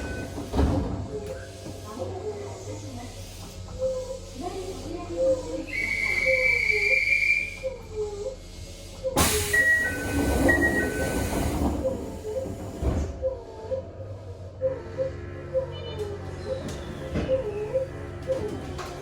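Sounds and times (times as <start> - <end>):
air brakes hissing: 8.4 - 13.2.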